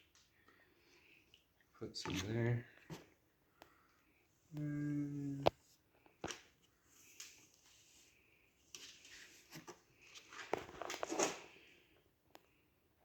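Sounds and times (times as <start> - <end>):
crackling and rustling: 5.4 - 11.8.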